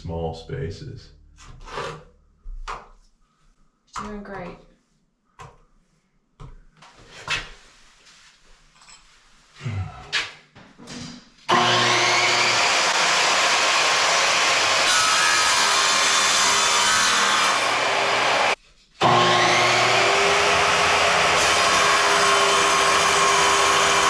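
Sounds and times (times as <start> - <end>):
power saw cutting tile: 11.5 - 24.0.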